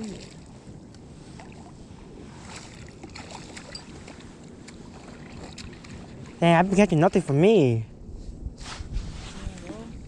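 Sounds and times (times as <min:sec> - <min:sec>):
outdoor background noise by river: 0:00.0 - 0:10.0.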